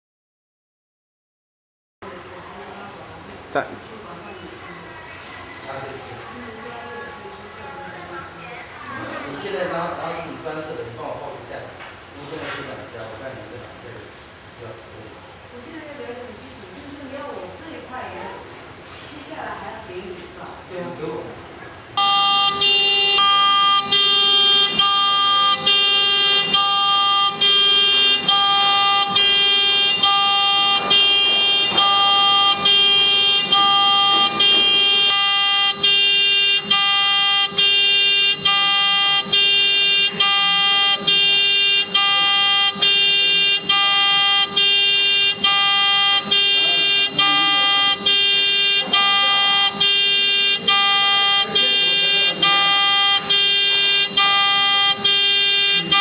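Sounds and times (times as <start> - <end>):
two-tone electronic alarm buzzing: 22.0 - 56.0.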